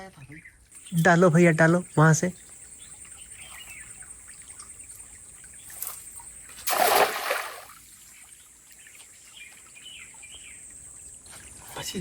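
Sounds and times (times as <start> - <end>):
net splashing into water: 5.7 - 8.0.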